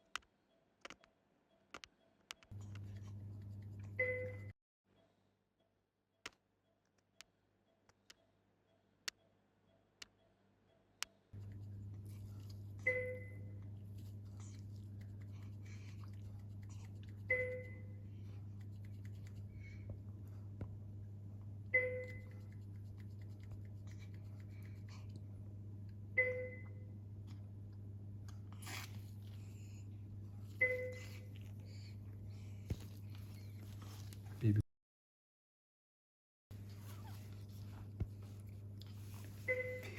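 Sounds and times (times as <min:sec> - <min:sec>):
low electrical hum: 0:02.4 - 0:04.5, 0:08.2 - 0:34.6, 0:36.5 - 0:39.9
patient monitor alert chime: 0:04.0 - 0:04.5, 0:12.8 - 0:13.6, 0:17.3 - 0:18.0, 0:21.7 - 0:22.5, 0:26.2 - 0:26.9, 0:30.6 - 0:31.3, 0:39.4 - 0:39.9.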